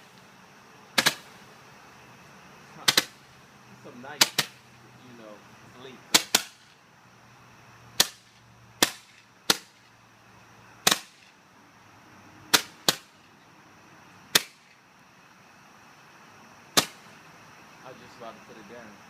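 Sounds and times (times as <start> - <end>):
fireworks popping: 1.0 - 1.5, 2.8 - 3.4, 4.1 - 4.8, 6.1 - 6.8, 8.0 - 9.9, 10.8 - 11.4.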